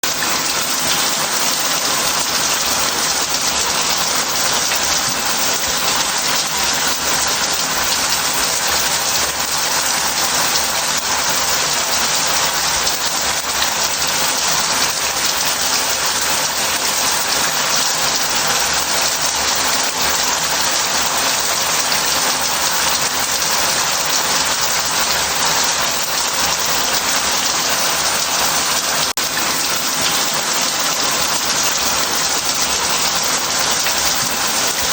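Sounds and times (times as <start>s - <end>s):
shower water spraying into bath: 0.0s - 34.9s.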